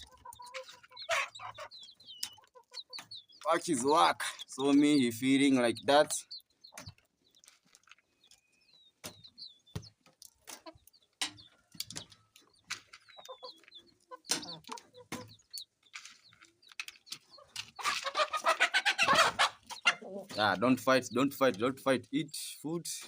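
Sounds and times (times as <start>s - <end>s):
chickens clucking: 0.0s - 23.0s.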